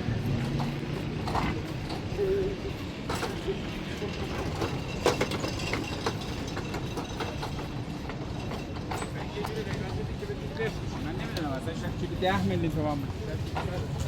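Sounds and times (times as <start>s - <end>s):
low rumble of street market: 0.0s - 14.0s
clicks and clatters: 4.2s - 10.0s.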